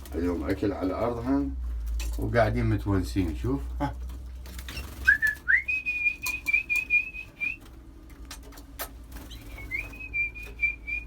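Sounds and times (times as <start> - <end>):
canary singing: 4.5 - 11.0.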